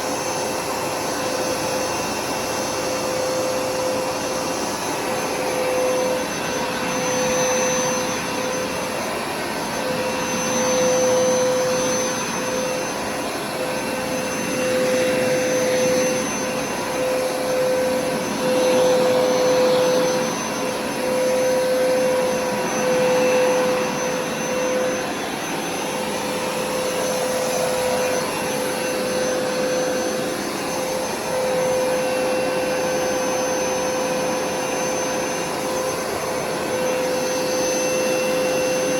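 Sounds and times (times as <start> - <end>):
carpet cleaner motor whine: 0.0 - 38.9.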